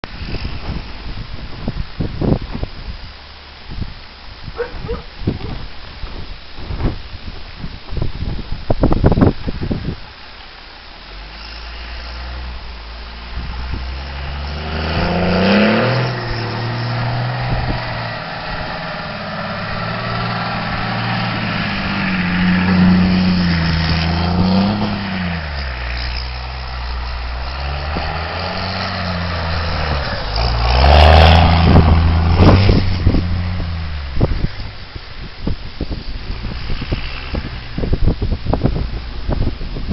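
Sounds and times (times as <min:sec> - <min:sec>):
diesel engine revving under load: 0:11.2 - 0:35.0.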